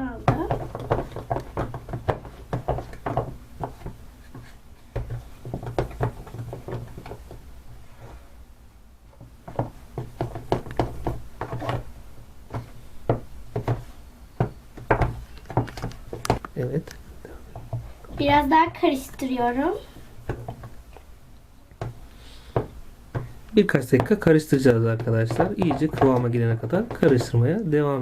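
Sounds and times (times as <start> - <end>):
stirrer knocking against container: 0.0 - 7.4, 9.2 - 11.9, 21.8 - 27.8.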